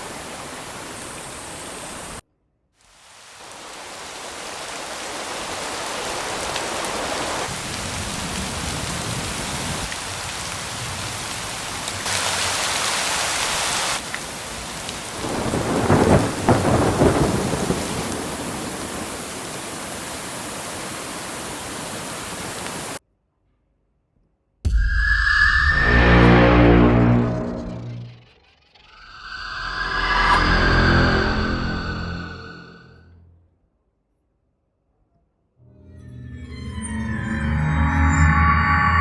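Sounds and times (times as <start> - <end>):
rain hiss: 0.0 - 2.2, 2.8 - 23.0
thunder clap: 15.0 - 19.4.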